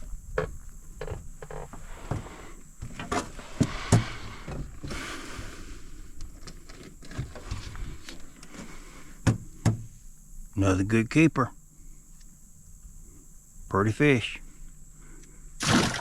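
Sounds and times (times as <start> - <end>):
knocks and thumps on a boat: 9.2 - 9.9.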